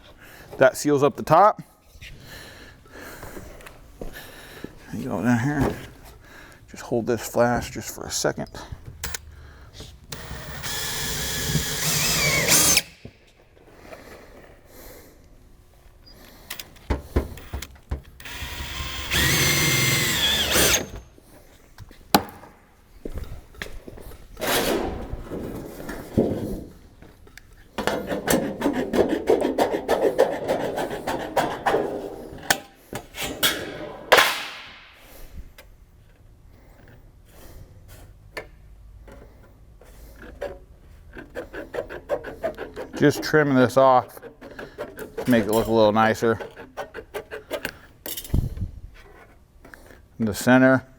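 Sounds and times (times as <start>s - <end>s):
power drill driving screws: 9.0s - 9.2s, 10.1s - 13.0s, 17.4s - 21.1s.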